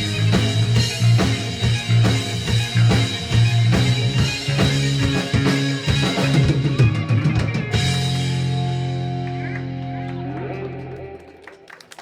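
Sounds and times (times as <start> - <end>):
drum kit beat: 0.0 - 10.6
bass guitar: 0.0 - 11.7
electric guitar: 0.0 - 12.0.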